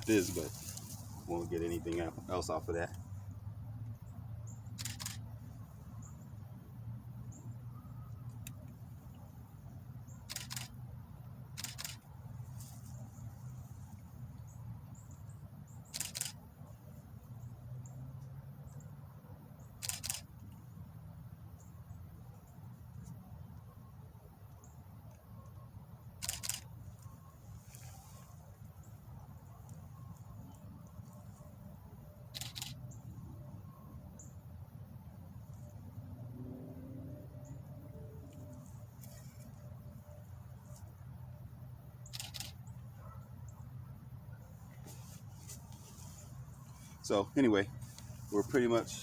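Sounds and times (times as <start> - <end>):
crackling rustles of plants: 0.0 - 36.2, 37.6 - 49.0.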